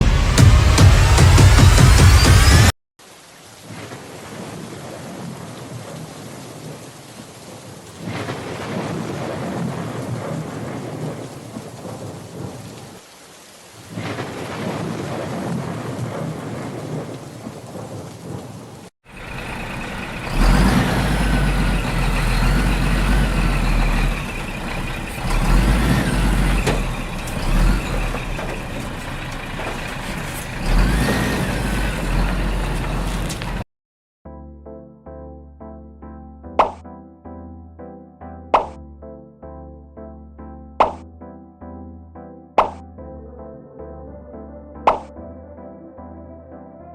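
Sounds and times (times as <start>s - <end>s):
deep bass: 0.0s - 2.7s
steady rain: 3.0s - 33.6s
thunder rumbling: 3.6s - 13.0s, 13.8s - 33.6s.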